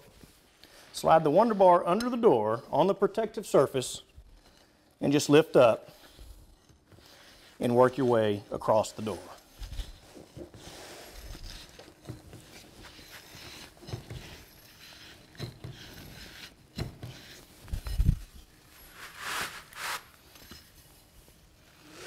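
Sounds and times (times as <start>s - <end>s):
pry bar scraping: 5.6s - 20.8s.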